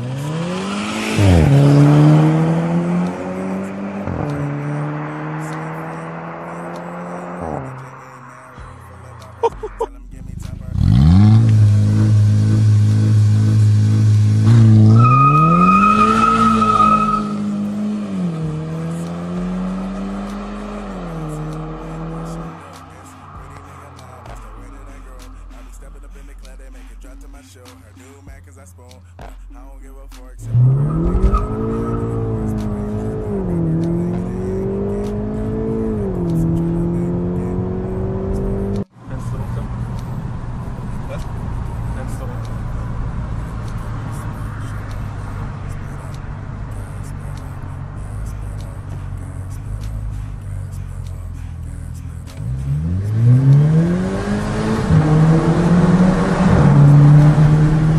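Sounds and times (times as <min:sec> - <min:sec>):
car engine revving: 0:00.0 - 0:27.2, 0:29.2 - 0:57.9
turbo whistle: 0:14.8 - 0:17.4
lower steady engine sound: 0:38.4 - 0:57.9.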